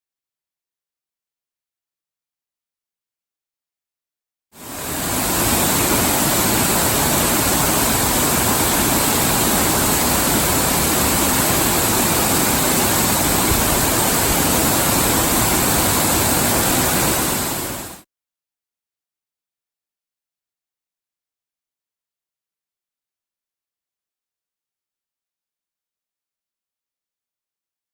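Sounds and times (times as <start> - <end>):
waterfall rushing: 4.6 - 18.0.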